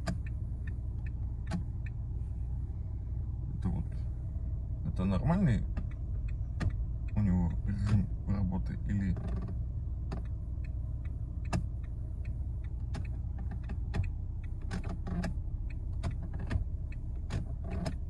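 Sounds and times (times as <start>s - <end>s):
steady low hum: 0.0s - 18.0s
switch creaking and clicking: 9.1s - 18.0s.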